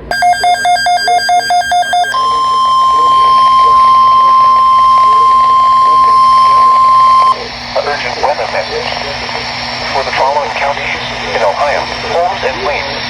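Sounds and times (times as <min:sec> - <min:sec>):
steady alarm tone: 0:00.0 - 0:07.4
warbling two-tone data chirps: 0:00.0 - 0:07.4.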